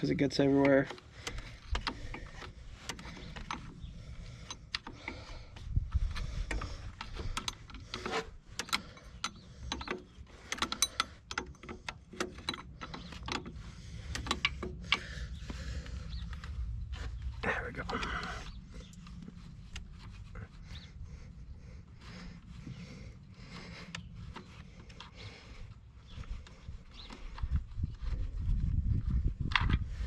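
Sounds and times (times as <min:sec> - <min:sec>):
wrench clinking on metal: 0:07.4 - 0:13.2.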